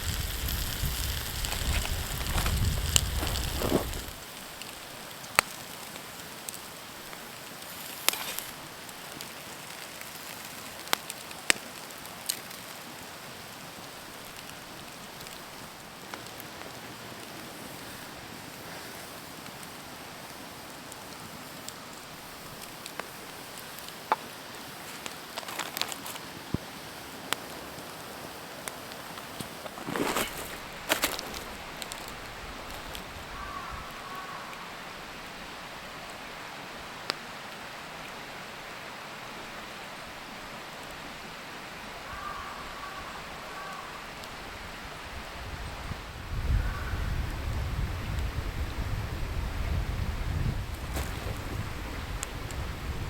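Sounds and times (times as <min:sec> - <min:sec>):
sharp pops from fire: 0:00.0 - 0:12.8, 0:18.8 - 0:33.1, 0:50.7 - 0:52.6
campfire crackling: 0:00.0 - 0:34.0, 0:47.4 - 0:53.0
steady hiss of fire: 0:00.0 - 0:53.0.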